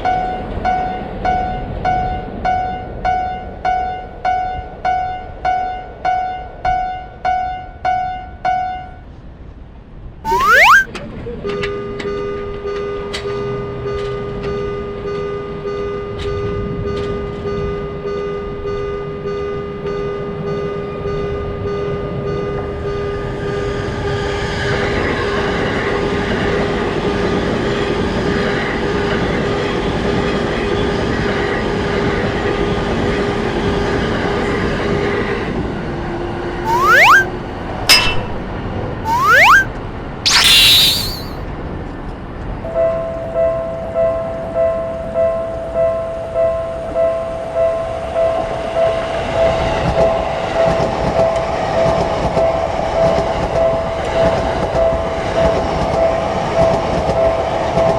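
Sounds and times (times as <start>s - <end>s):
rising cartoon whistle: 10.3s - 10.9s, 36.7s - 37.3s, 39.1s - 39.7s, 40.3s - 41.4s.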